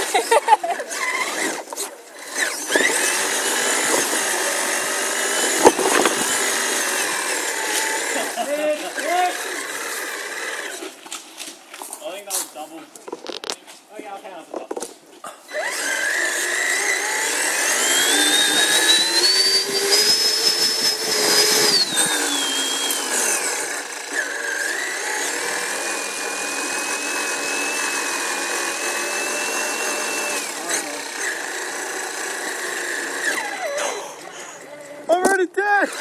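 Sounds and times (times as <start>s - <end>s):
electric motor whining: 0.0s - 11.0s, 15.5s - 35.1s, 35.8s - 36.0s.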